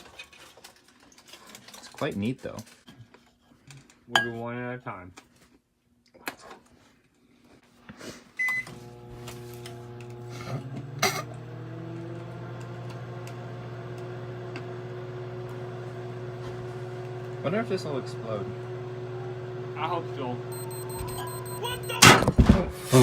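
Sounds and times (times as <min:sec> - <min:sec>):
microwave oven humming: 0:08.4 - 0:23.0
short beep: 0:20.5 - 0:22.2.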